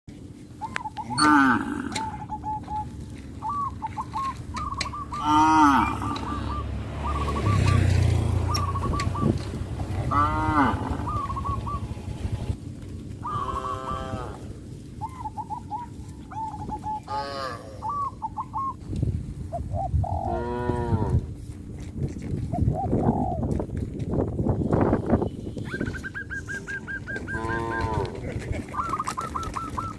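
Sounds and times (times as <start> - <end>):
bird chirps: 0.6 - 9.6, 11.0 - 12.3, 25.2 - 27.9, 28.7 - 29.9
cattle calls: 0.7 - 3.2, 4.0 - 6.8, 9.8 - 11.7, 13.2 - 14.6, 17.0 - 18.1, 26.4 - 29.9
cows mooing: 1.1 - 2.2, 5.2 - 6.7, 9.8 - 11.3, 13.2 - 14.6, 27.1 - 28.4
shuffling and rustling: 21.2 - 25.0.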